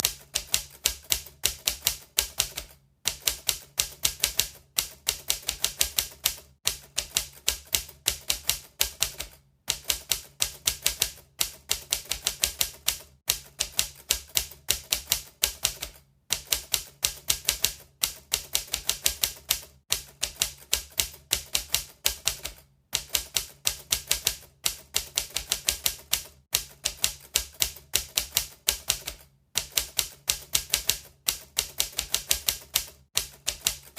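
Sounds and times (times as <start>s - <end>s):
typewriter key strikes: 0.0s - 33.9s.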